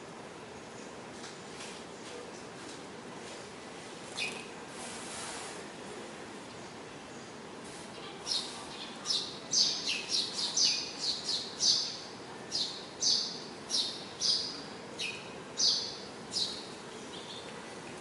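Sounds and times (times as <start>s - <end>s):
steady background hiss: 0.0s - 18.0s
sparrows chirping: 4.1s - 4.6s, 6.6s - 17.7s.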